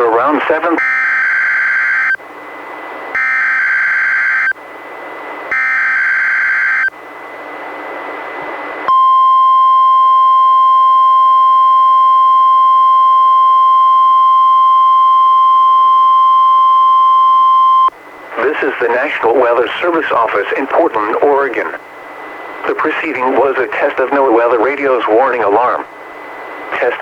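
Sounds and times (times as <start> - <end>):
radio hiss: 0.0 - 0.8, 18.3 - 27.0
steady warning alarm tone: 0.7 - 7.0.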